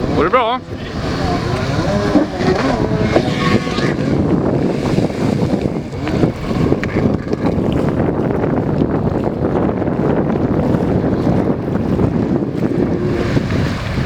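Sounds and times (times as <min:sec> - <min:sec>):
jet ski engine: 0:00.0 - 0:14.0
wind buffeting microphone: 0:00.0 - 0:14.0.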